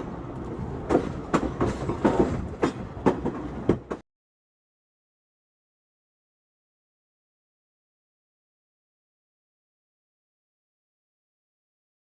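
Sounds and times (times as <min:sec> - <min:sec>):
train wheels clicking over rail joints: 0:00.0 - 0:04.0.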